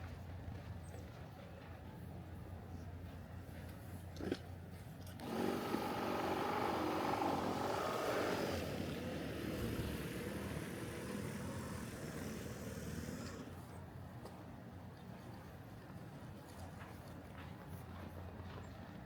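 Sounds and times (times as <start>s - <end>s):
motor engine running: 5.2s - 13.6s.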